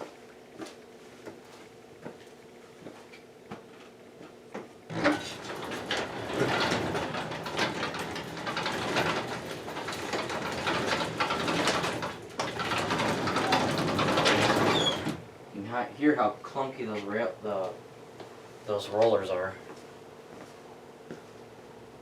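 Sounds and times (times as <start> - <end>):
garage door clunk: 4.9 - 15.3
garage door rollers rattling: 4.9 - 15.3.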